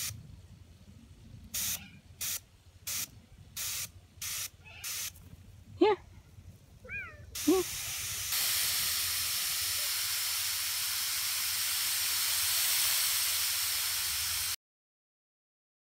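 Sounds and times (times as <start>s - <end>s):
water spraying with a hiss: 0.0s - 0.2s, 1.5s - 5.2s, 7.4s - 14.6s
cat meow: 6.8s - 7.4s.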